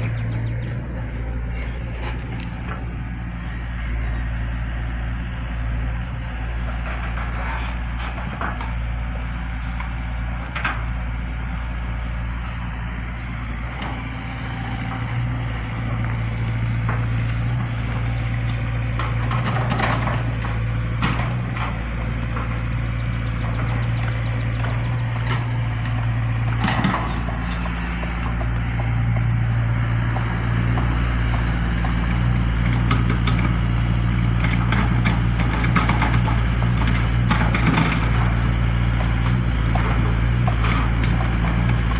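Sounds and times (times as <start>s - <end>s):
excavator diesel engine running: 0.0s - 41.9s
sharp knocks and clanks: 12.2s - 41.9s.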